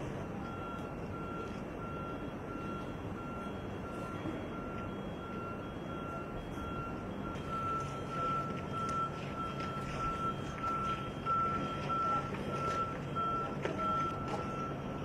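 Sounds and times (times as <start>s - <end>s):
electronic beeper beeping: 0.4s - 15.0s.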